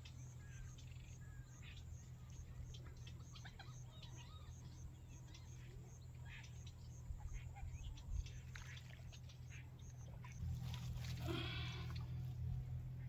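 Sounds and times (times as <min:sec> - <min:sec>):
small birds chirping: 0:00.0 - 0:10.4
steady low hum: 0:00.0 - 0:13.0.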